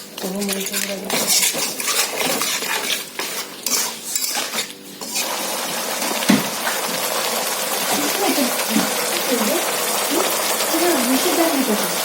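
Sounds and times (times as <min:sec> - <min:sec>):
spatula scraping a pan: 0:00.0 - 0:07.0.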